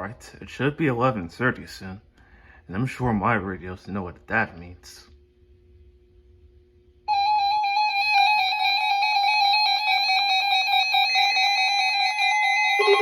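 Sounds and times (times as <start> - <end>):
electronic alert beeping: 12.7 - 13.0.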